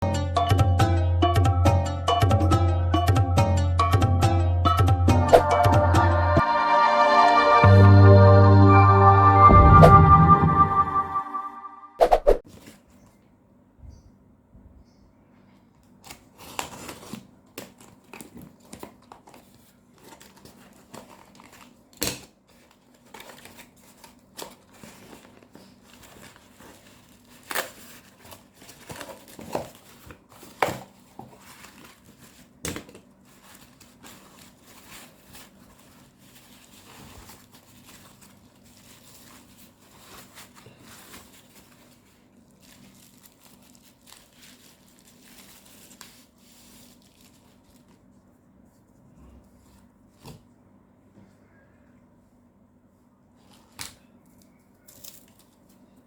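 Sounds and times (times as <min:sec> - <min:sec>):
packaging crinkling and tearing: 0:15.9 - 0:48.1.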